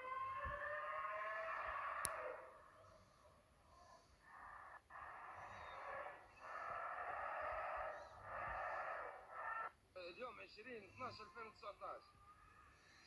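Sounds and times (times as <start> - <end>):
wheezing groaning noise: 1.2 - 9.7.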